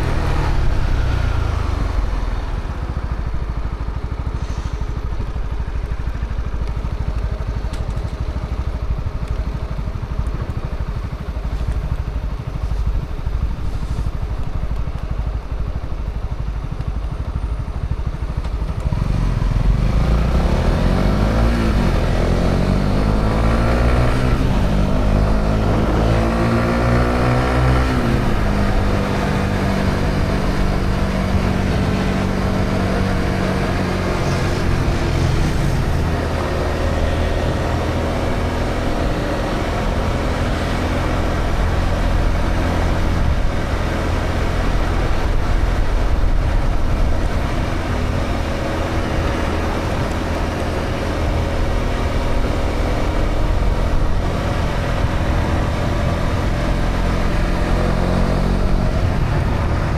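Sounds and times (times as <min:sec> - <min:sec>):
motorcycle engine rumbling: 0:00.0 - 0:59.9.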